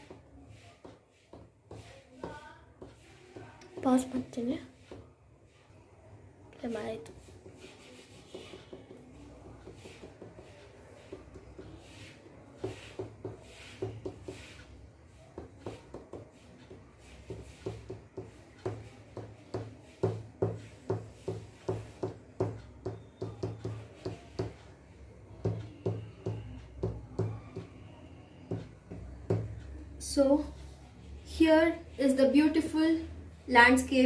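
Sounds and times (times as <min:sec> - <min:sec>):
pen tip tapping on paper: 0:15.4 - 0:24.6.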